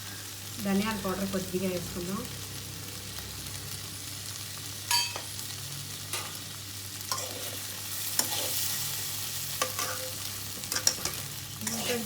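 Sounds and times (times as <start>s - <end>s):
okra sizzling in oil: 0.0s - 12.0s
spatula scraping and clinking pan: 7.1s - 8.8s, 9.6s - 12.0s.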